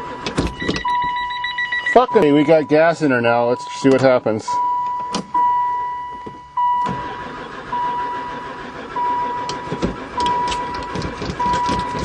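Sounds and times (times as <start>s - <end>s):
dashboard warning chime: 0.1s - 12.0s
starter cranking engine: 6.8s - 12.0s.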